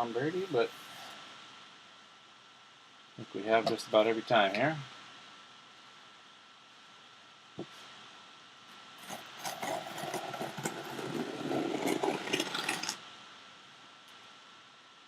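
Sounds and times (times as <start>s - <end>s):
packaging scraping and crinkling: 9.0s - 13.0s.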